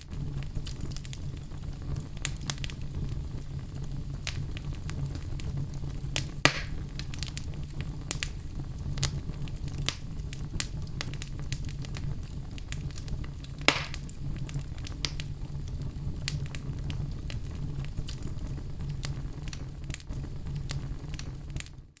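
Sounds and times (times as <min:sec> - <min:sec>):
burning wood crackling: 0:00.0 - 0:22.0
rumble of flames: 0:00.0 - 0:22.0
loud wood pops: 0:06.4 - 0:06.8, 0:13.6 - 0:14.1.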